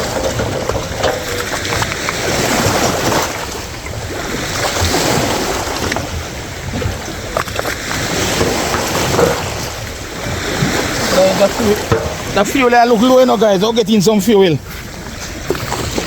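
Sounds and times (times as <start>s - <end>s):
sea rushing: 0.0s - 16.0s
wind buffeting microphone: 0.0s - 16.0s
faint knocks: 11.8s - 12.6s.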